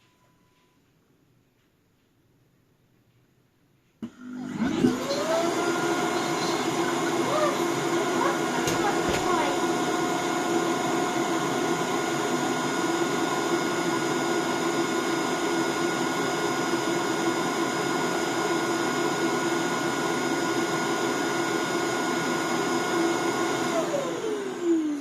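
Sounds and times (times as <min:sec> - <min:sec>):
suction motor whining: 0:04.0 - 0:12.7
motor spinning down: 0:04.1 - 0:10.0.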